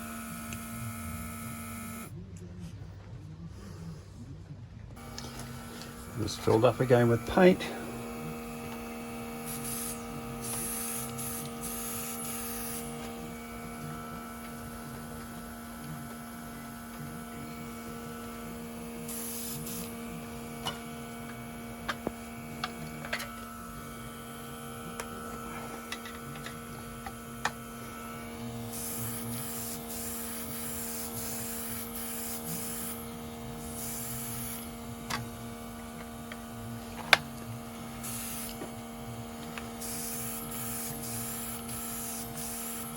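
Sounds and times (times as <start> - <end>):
airbrush compressor humming: 0.0 - 2.1, 5.0 - 42.9
airbrush hissing: 5.0 - 25.9, 26.9 - 35.0, 37.8 - 38.8, 39.5 - 42.9.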